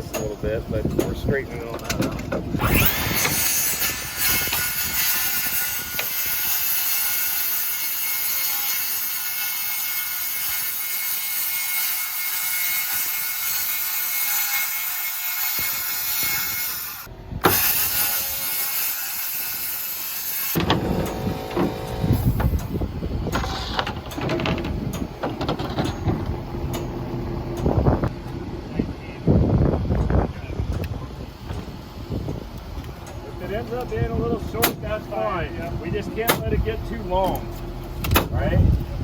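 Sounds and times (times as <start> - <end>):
power saw cutting metal sheet: 2.5 - 22.6.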